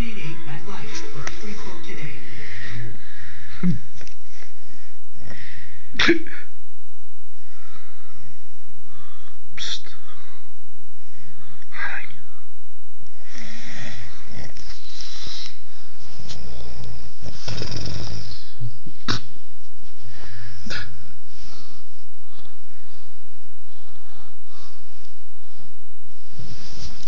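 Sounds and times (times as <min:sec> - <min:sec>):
woman snoring loudly: 0:13.3 - 0:18.8.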